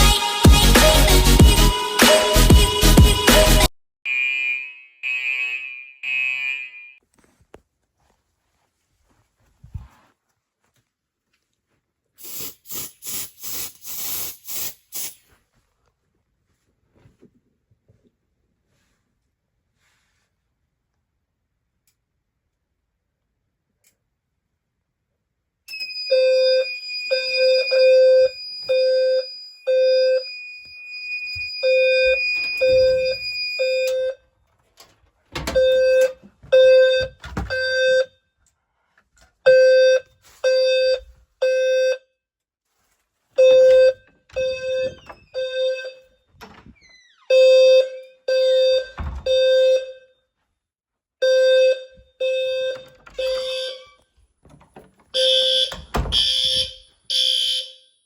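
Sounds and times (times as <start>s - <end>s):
fire alarm beeps: 4.1s - 7.0s, 25.7s - 34.2s, 35.4s - 38.1s, 39.5s - 42.0s, 43.4s - 46.1s, 47.3s - 50.1s, 51.2s - 54.0s, 55.1s - 58.0s.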